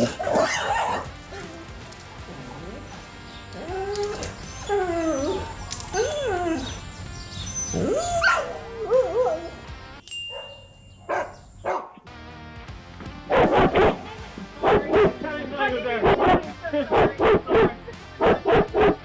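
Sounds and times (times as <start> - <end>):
dog barking: 0.0 - 9.6, 10.3 - 12.0, 13.3 - 15.4, 16.0 - 19.0
background music: 0.0 - 10.4, 11.1 - 19.0
dog whining and yelping: 0.1 - 9.6.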